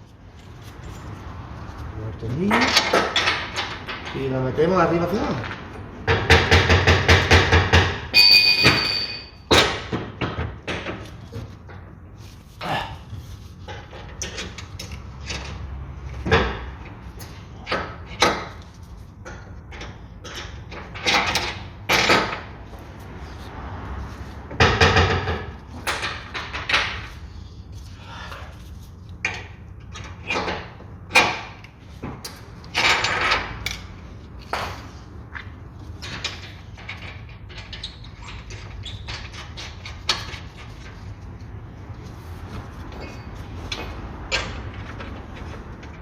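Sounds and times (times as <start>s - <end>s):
knocks of car suspension parts: 2.5s - 4.2s, 5.4s - 12.0s, 13.6s - 17.0s, 17.6s - 22.6s, 24.5s - 27.2s, 29.2s - 35.0s
metal tools clunking and scraping: 42.5s - 46.0s.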